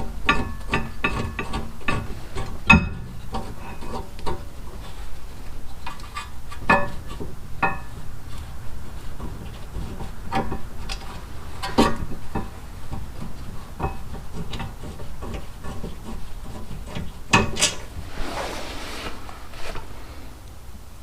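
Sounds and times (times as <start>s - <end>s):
short scraping rub: 14.6s - 20.4s.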